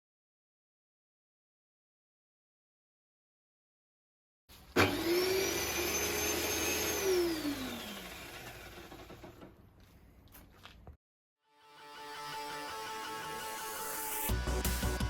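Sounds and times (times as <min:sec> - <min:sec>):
tile saw whining: 0:04.6 - 0:09.5.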